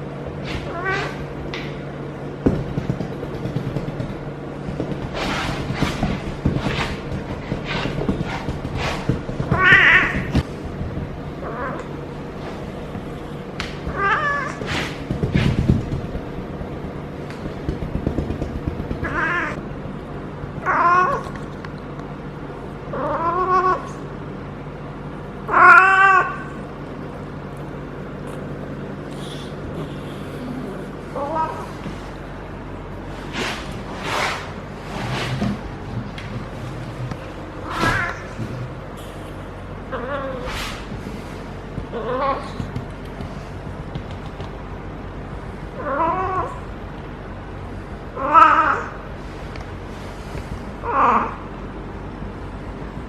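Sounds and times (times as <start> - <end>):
cat yowling: 13.9 - 14.9, 25.5 - 26.6, 37.6 - 38.4.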